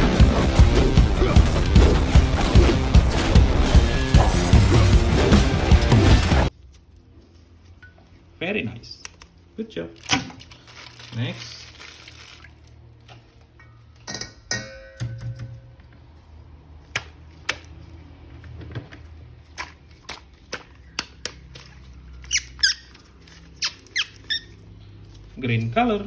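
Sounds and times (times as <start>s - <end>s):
plastic packaging handled: 9.0s - 13.6s, 18.3s - 26.0s
toy squeaks: 22.2s - 24.6s.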